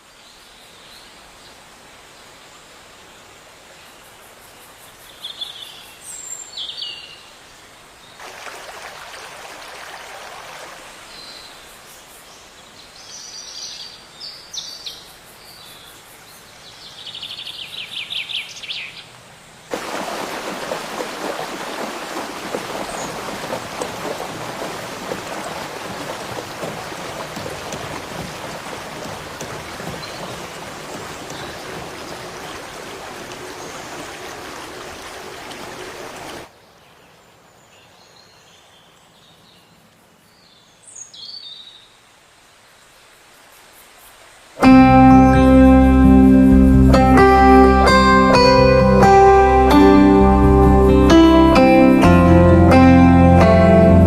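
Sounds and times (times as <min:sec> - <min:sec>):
running water rushing: 0:07.8 - 0:11.9, 0:19.6 - 0:36.5
birds chirping: 0:19.7 - 0:36.4.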